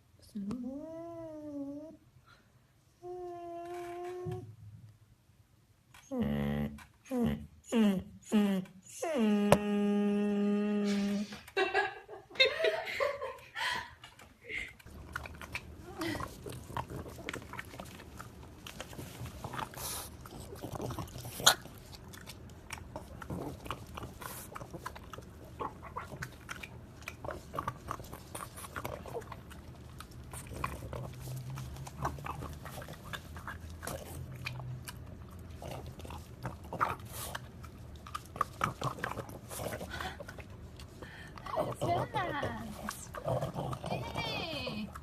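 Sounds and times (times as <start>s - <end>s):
dog chewing with crunches: 14.1s - 45.0s.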